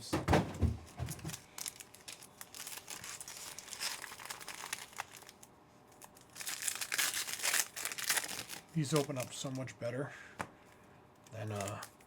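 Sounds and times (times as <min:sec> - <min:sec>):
packaging crinkling and tearing: 0:01.0 - 0:09.6, 0:11.4 - 0:12.0.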